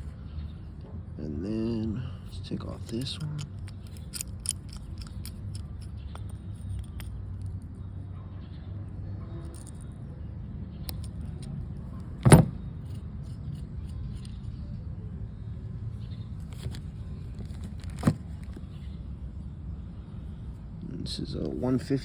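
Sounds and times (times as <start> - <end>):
screwdriver clicking on metal parts: 2.7 - 7.6, 10.9 - 14.5.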